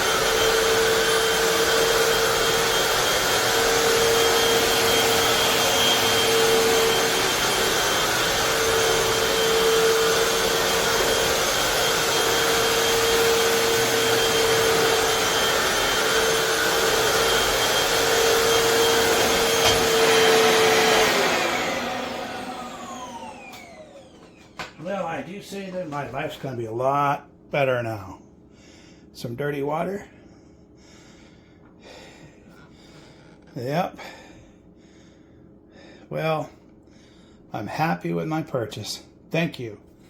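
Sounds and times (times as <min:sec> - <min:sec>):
floor cleaner motor whine: 0:00.0 - 0:26.5.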